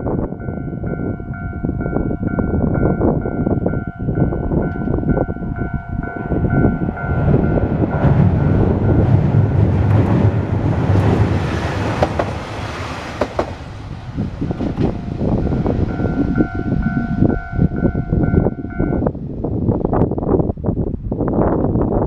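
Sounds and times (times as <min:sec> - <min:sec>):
crossing warning bell dinging: 0:00.0 - 0:19.2
diesel railcar rumbling: 0:00.0 - 0:22.0
wheel clacks over rail joints: 0:06.1 - 0:13.8.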